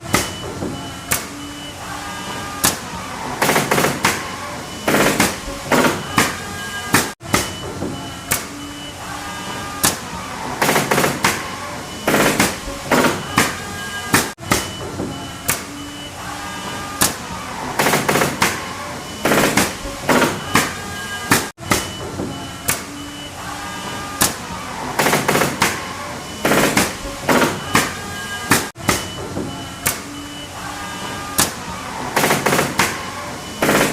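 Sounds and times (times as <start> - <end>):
steady background noise: 0.0 - 33.9
nail gun firing into wood: 3.4 - 7.6, 10.6 - 14.7, 17.8 - 22.0, 25.0 - 29.1, 32.2 - 33.9.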